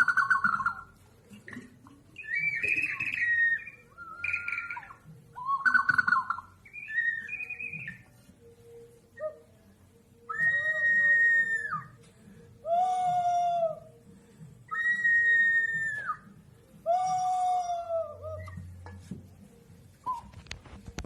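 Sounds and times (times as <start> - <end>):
whistle-like animal call imitations: 0.0 - 8.1, 9.1 - 9.6, 10.2 - 12.0, 12.6 - 14.0, 14.7 - 18.8, 20.0 - 20.5.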